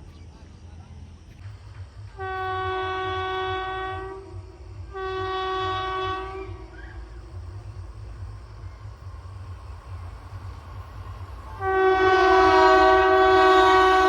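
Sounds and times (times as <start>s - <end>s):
train rumbling: 0.0s - 14.0s
train horn blasts: 2.1s - 7.2s, 11.5s - 14.0s.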